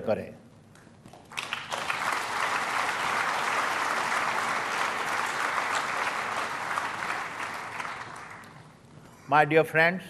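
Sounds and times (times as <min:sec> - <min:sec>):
audience applauding: 0:01.1 - 0:08.8.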